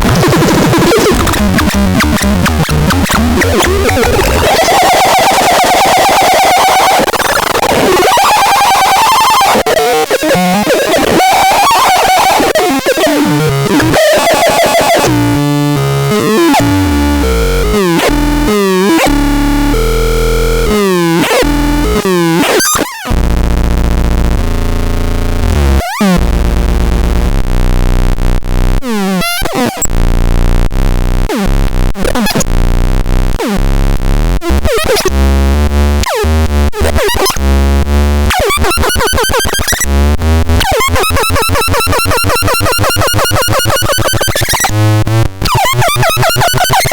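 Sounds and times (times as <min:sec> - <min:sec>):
low synth bass: 0:00.0 - 0:04.7, 0:15.1 - 0:22.2, 0:23.1 - 0:29.2, 0:29.9 - 0:38.3, 0:39.8 - 0:41.9
glitchy synthesizer noise: 0:00.0 - 0:46.9.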